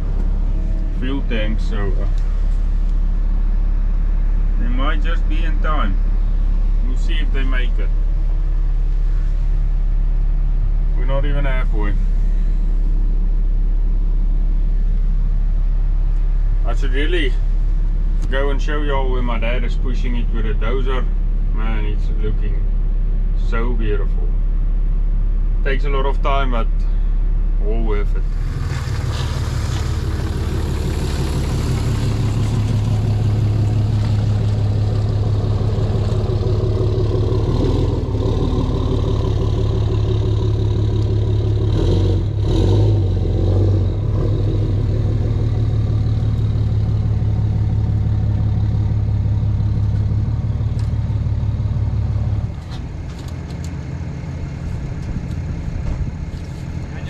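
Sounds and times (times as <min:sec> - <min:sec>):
excavator diesel engine running: 0:00.0 - 0:10.9, 0:28.2 - 0:57.0.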